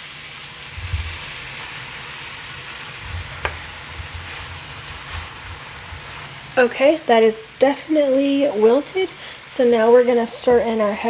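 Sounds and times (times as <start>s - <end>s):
vegetables sizzling in butter: 0.0s - 11.0s.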